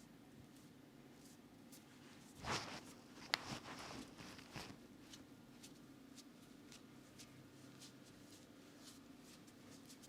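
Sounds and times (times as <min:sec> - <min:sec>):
hands rubbing through hair: 0:02.4 - 0:04.8.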